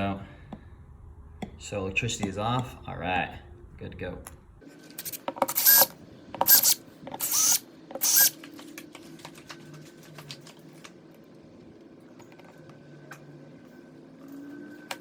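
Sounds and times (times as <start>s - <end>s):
screwdriver rasping on screws: 5.0s - 8.4s.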